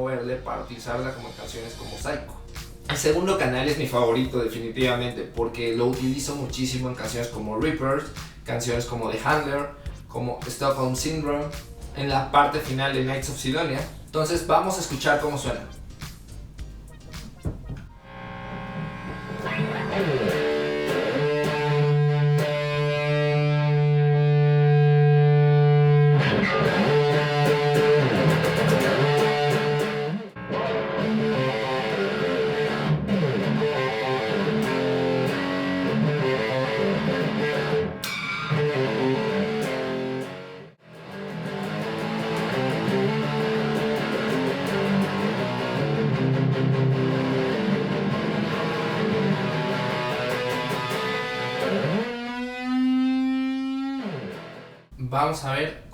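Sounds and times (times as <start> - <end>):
distorted electric guitar: 16.6 - 55.0.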